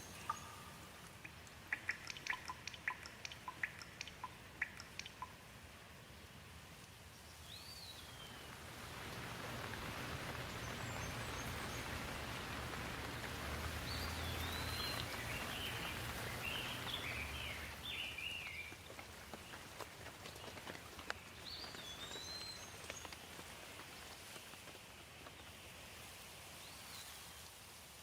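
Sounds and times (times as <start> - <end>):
bird chirping: 0.0 - 5.4, 10.0 - 19.6, 20.3 - 23.3
rain falling on leaves: 0.0 - 28.0.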